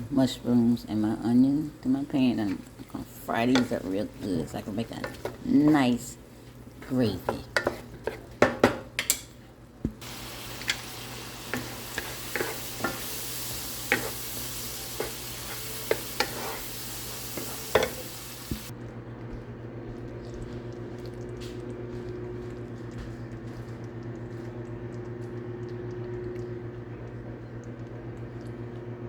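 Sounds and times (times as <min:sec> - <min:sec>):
utensil clicking against pan: 0:06.8 - 0:09.3, 0:10.4 - 0:16.5
food sizzling in a pan: 0:10.0 - 0:18.7.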